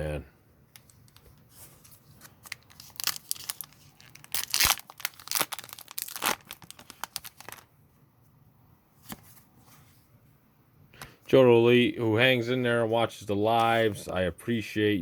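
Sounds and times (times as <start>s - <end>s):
foil wrapper crinkling and tearing: 2.2s - 7.7s.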